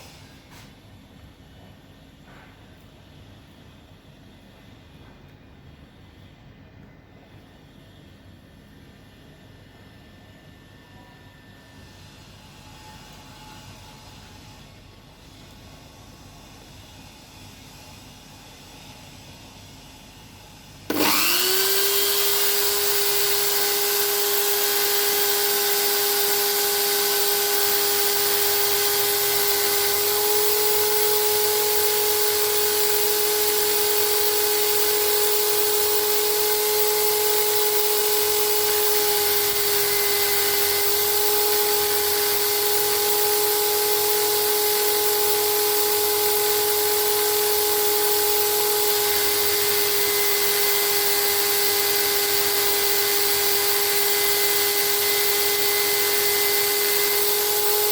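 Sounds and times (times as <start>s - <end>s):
electric motor whining: 20.9s - 57.9s.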